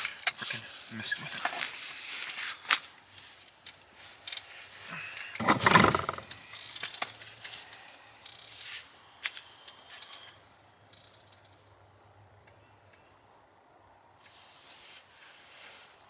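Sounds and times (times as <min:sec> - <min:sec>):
handling rustle and thump: 0:05.4 - 0:06.4
metallic clicks and rattles: 0:05.4 - 0:07.1.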